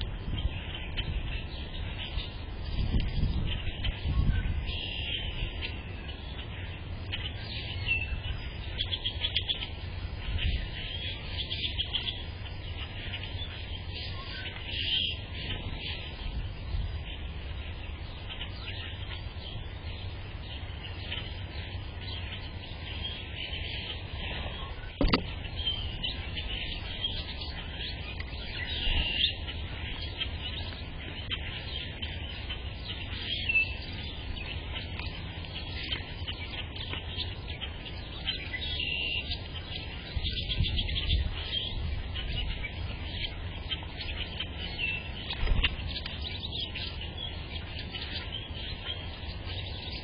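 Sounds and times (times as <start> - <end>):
small birds chirping: 0.0 - 50.0
steady low rumble: 0.0 - 50.0
sharp knock: 25.0 - 25.3.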